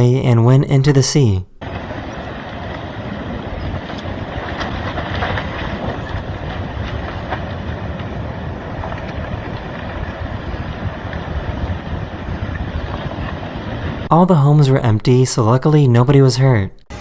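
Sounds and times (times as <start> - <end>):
low rushing noise: 0.0 - 15.2
faint cracks: 1.6 - 13.7
wind buffeting microphone: 1.6 - 14.1.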